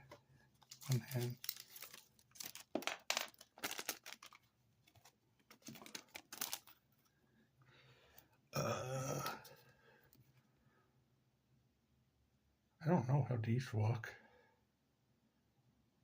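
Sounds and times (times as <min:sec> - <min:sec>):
plastic clicks and crinkling: 0:00.1 - 0:06.8.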